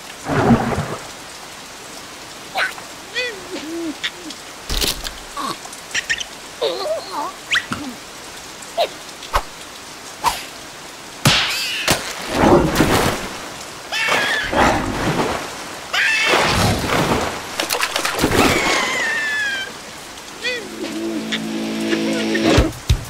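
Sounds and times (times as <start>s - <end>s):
loud rushing rain-like noise: 0.0s - 23.0s
squeaky creature voices chattering: 2.6s - 4.4s.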